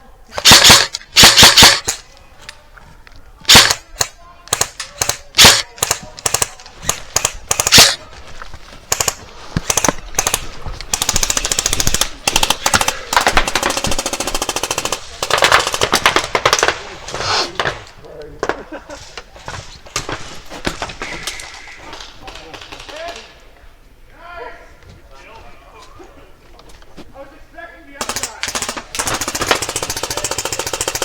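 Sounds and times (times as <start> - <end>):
airsoft gun firing: 0.4 - 2.0, 3.5 - 8.0.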